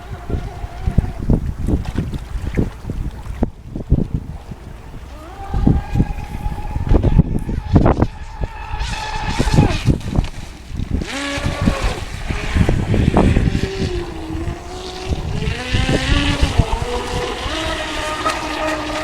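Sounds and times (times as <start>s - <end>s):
low buffeting noise: 0.0s - 19.0s
electric motor whining: 5.1s - 10.2s, 10.9s - 19.0s.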